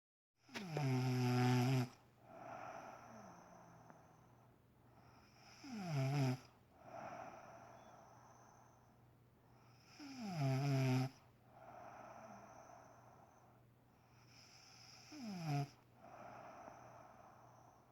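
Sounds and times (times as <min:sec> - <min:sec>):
woman snoring: 0:00.5 - 0:04.2, 0:05.1 - 0:08.4, 0:09.7 - 0:12.9, 0:14.2 - 0:17.7
soft breathy exhale: 0:02.2 - 0:04.4, 0:06.8 - 0:09.0, 0:16.0 - 0:17.9.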